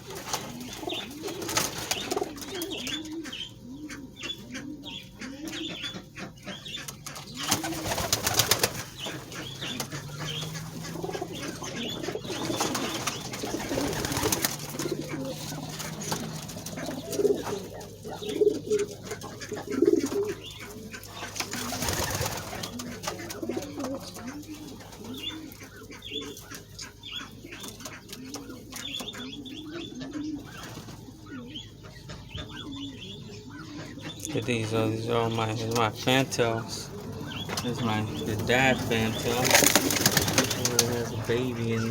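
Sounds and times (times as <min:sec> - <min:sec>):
wing flapping: 0:00.0 - 0:02.9, 0:06.9 - 0:25.6, 0:36.9 - 0:41.9
pigeons cooing: 0:00.0 - 0:41.9.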